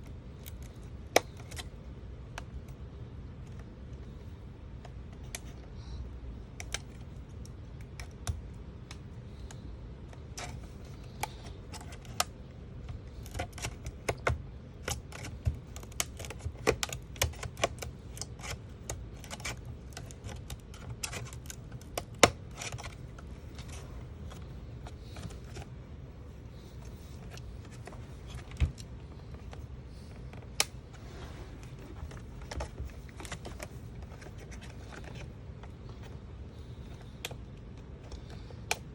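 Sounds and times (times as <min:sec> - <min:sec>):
steady low hum: 0:00.0 - 0:38.9
plastic clips snapping: 0:00.4 - 0:01.7, 0:06.4 - 0:25.7, 0:26.6 - 0:30.9.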